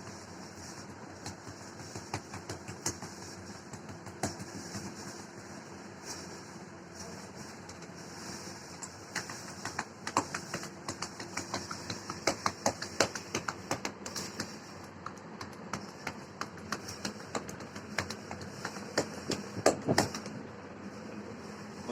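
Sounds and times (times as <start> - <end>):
hands clapping on torso: 9.1 - 20.3.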